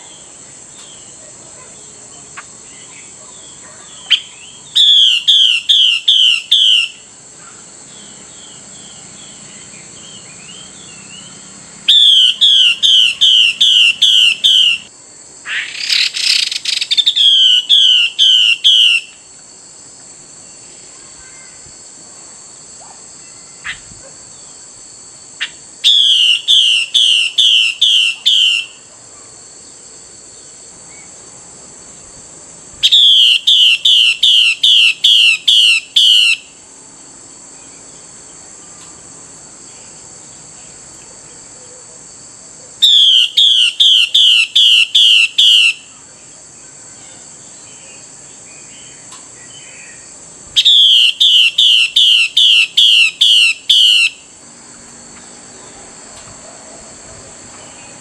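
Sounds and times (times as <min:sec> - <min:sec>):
high insect-like hiss: 0:00.0 - 0:58.0
bird calling down-slurred notes: 0:50.6 - 0:54.3.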